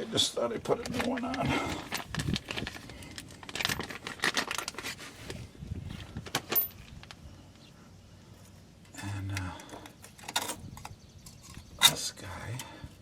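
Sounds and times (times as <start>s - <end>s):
small metal parts clinking: 0.9s - 5.0s, 6.2s - 7.1s, 9.6s - 12.0s.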